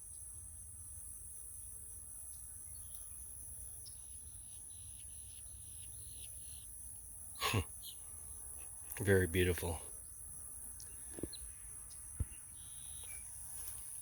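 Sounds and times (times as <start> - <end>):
insects droning: 0.0 - 14.0
short buzzy calls: 7.4 - 8.0.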